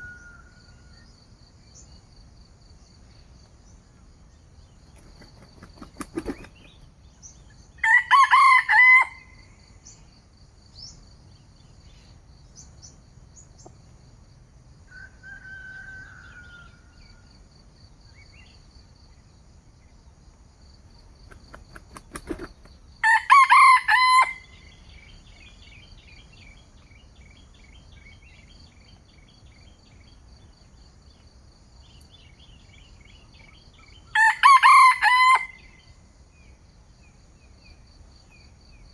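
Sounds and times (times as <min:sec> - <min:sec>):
high insect trill: 0:04.9 - 0:06.8
rooster crowing: 0:07.8 - 0:09.4, 0:14.9 - 0:17.0, 0:22.3 - 0:24.6, 0:34.1 - 0:35.6.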